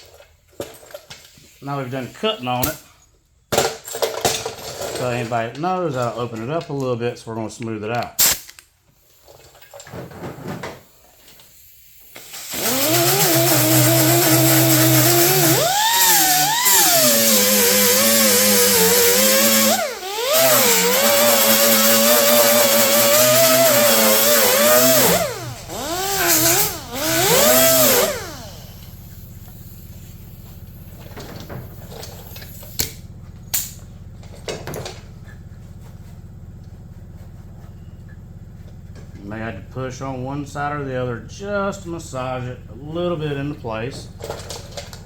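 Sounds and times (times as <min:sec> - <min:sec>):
electric grinder on sheet steel: 0:12.3 - 0:29.1.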